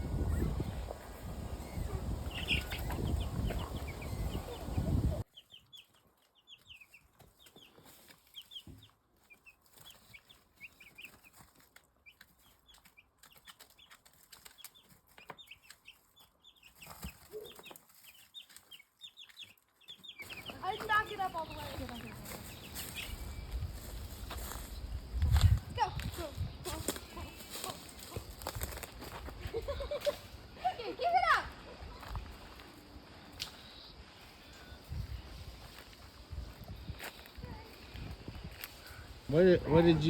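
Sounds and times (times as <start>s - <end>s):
chicks peeping: 0.0s - 28.8s.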